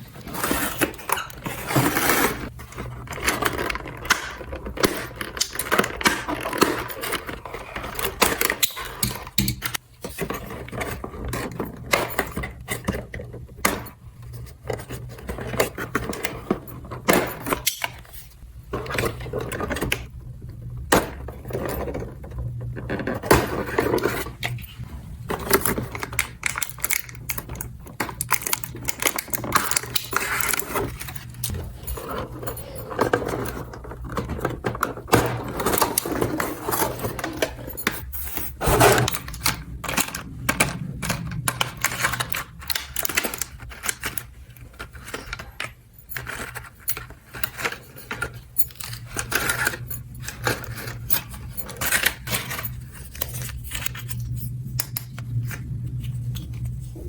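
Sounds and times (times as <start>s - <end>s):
plastic toy parts clicking: 25.4s - 31.6s, 33.6s - 55.2s.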